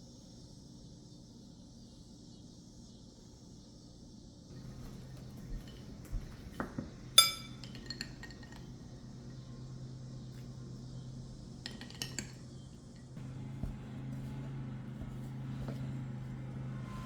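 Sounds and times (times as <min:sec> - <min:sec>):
steady low hum: 0:04.5 - 0:17.0
dishes clinking: 0:04.6 - 0:09.4, 0:11.4 - 0:15.9.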